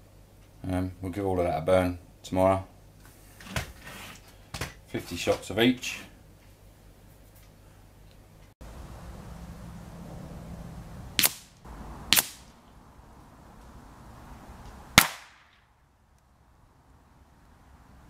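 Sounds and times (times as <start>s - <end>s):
rifle shots: 11.2s - 11.5s, 12.1s - 12.5s, 15.0s - 15.6s.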